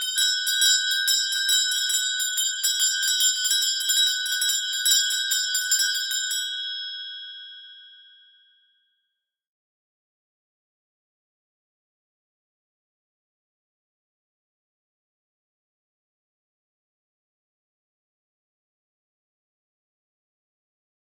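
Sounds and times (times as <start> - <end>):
handbell ringing: 0.0 - 8.1.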